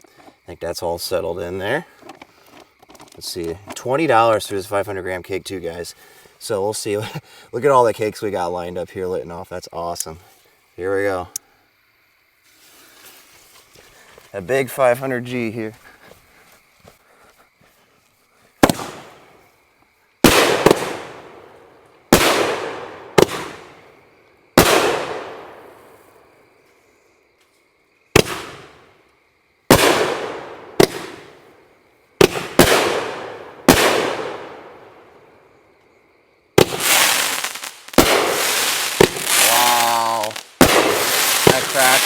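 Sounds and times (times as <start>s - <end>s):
firework bangs: 18.6s - 19.3s, 20.2s - 21.5s, 22.1s - 23.8s, 24.6s - 25.9s, 28.1s - 28.9s, 29.7s - 31.4s, 32.2s - 35.0s, 36.6s - 42.0s.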